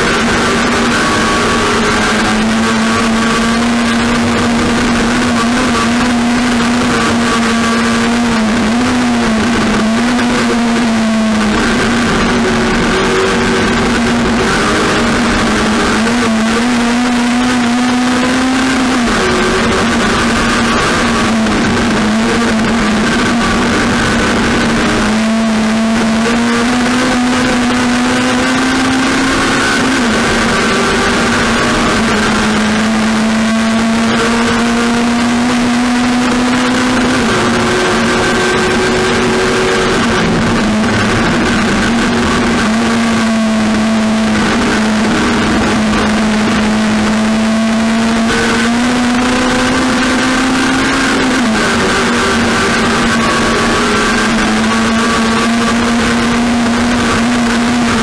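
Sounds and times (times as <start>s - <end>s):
racing engine revving: 0.0s - 58.0s.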